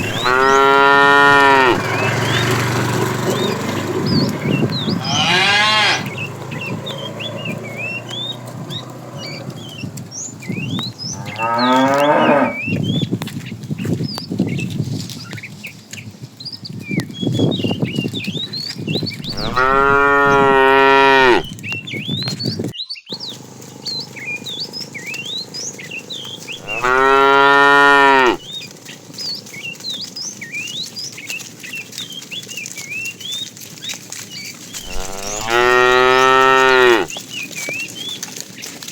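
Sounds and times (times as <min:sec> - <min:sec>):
cattle mooing: 0:00.0 - 0:12.7, 0:19.2 - 0:21.5, 0:24.2 - 0:28.6, 0:34.8 - 0:37.2.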